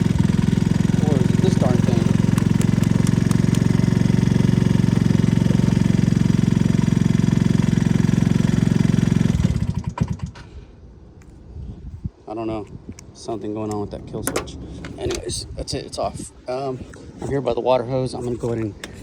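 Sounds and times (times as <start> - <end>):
small engine idling: 0.0 - 10.5.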